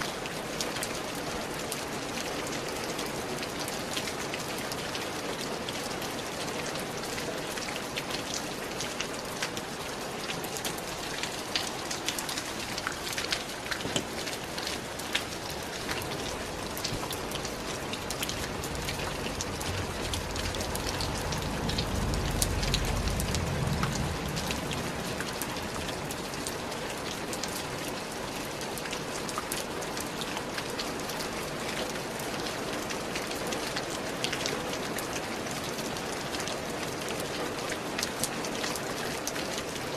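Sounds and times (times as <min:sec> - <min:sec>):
steady rain hissing: 0:00.0 - 0:39.9
low rumble: 0:18.3 - 0:25.8.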